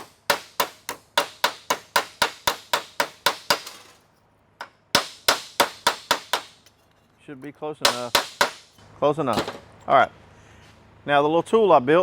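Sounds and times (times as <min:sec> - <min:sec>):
hammer on sheet metal: 0:00.0 - 0:03.8, 0:04.6 - 0:06.6, 0:07.9 - 0:08.7.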